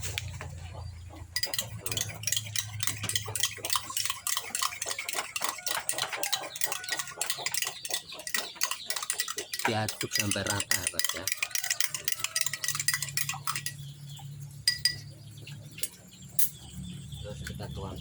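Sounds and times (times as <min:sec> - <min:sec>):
spoon clinking in a cup: 0:01.4 - 0:14.0, 0:14.6 - 0:15.1, 0:15.8 - 0:16.6.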